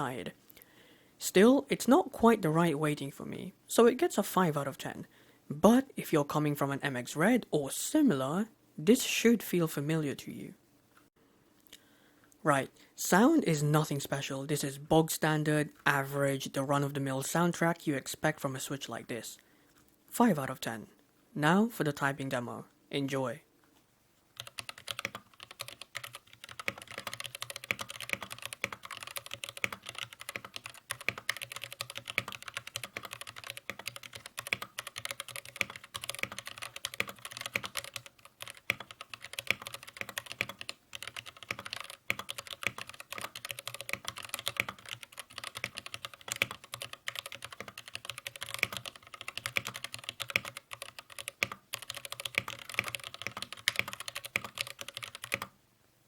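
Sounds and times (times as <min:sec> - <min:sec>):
faint steady hiss: 0:00.0 - 0:56.0
fast mechanical keyboard typing: 0:24.4 - 0:55.5.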